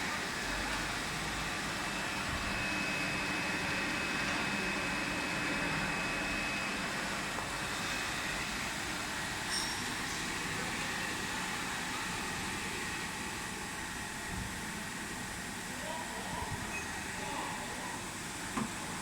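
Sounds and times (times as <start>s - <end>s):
thin high whine: 0.0s - 14.2s
extrusion machine running: 0.0s - 19.0s.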